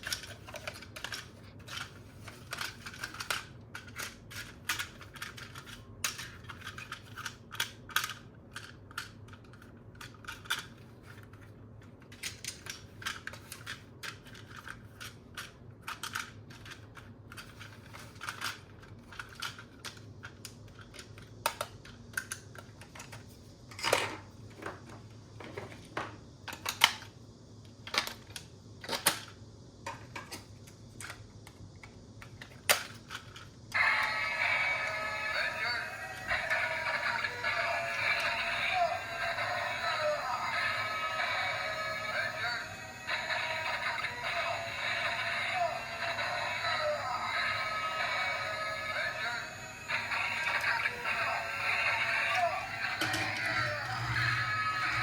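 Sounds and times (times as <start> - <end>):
plastic toy parts clicking: 0.0 - 23.2, 26.5 - 27.1, 31.0 - 33.8.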